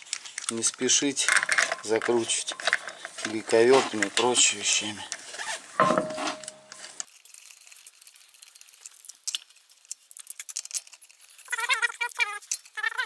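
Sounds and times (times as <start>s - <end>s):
small metal parts clinking: 7.0s - 13.0s.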